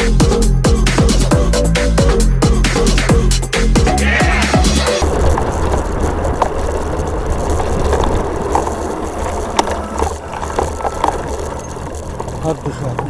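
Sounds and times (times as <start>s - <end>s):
wind rumbling on microphone: 5.0s - 13.0s.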